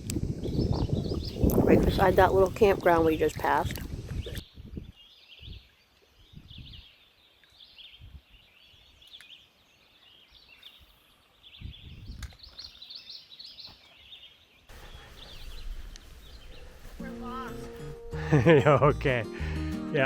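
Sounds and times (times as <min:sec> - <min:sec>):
wind rumble on microphone: 0:00.0 - 0:06.9, 0:07.9 - 0:08.5, 0:11.5 - 0:12.5
birds twittering: 0:00.2 - 0:17.7.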